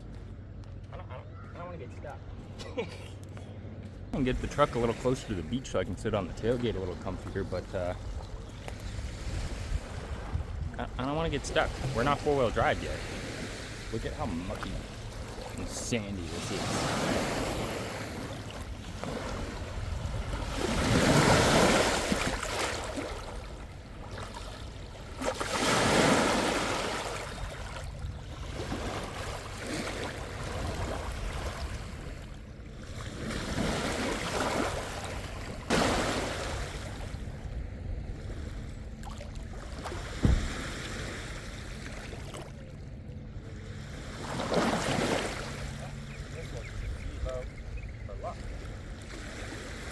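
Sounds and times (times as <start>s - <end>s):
lake waves washing onto shore: 4.2s - 42.6s, 43.7s - 49.9s
wind on microphone: 8.0s - 12.0s, 18.7s - 21.8s.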